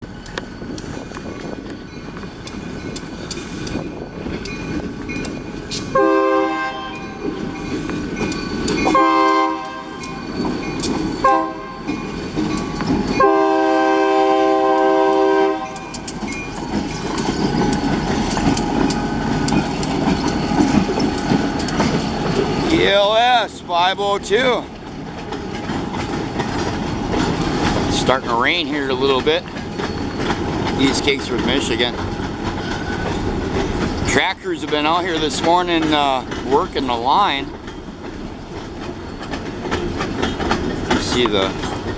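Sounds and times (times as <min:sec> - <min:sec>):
train rumble and rail clatter: 0:00.0 - 0:41.9
locomotive air horn: 0:05.9 - 0:07.2, 0:08.8 - 0:10.2, 0:11.2 - 0:12.0, 0:13.1 - 0:15.9.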